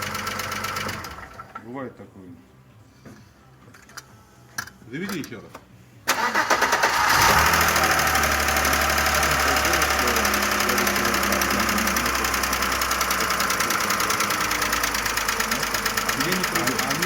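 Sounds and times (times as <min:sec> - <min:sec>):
car engine idling: 0:00.0 - 0:01.6, 0:06.1 - 0:17.0.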